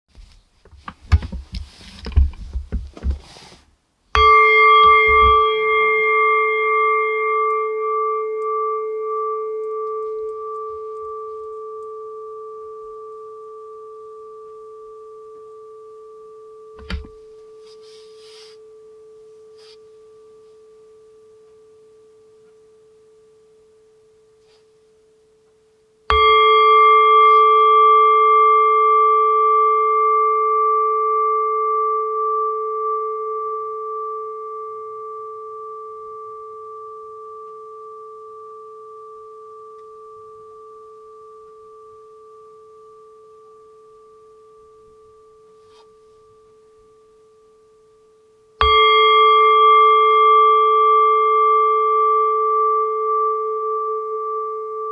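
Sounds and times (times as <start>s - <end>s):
knocking and handling noise: 0.1s - 3.7s, 16.8s - 17.2s
singing bowl ringing: 4.1s - 54.9s.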